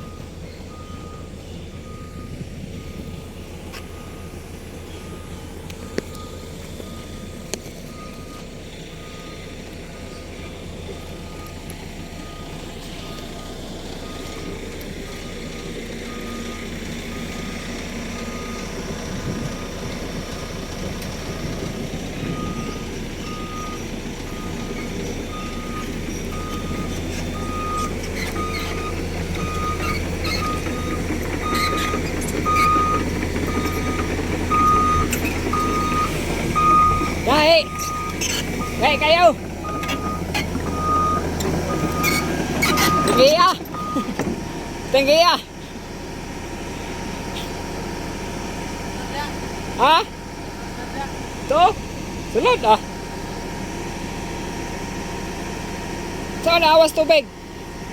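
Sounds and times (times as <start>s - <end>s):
travel alarm beeping: 0.0s - 19.4s, 21.3s - 44.2s
excavator diesel engine running: 0.0s - 57.9s.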